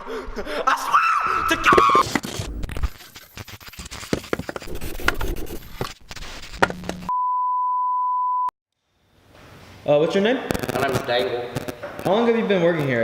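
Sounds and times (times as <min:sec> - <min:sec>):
censor bleep: 0:07.1 - 0:08.5.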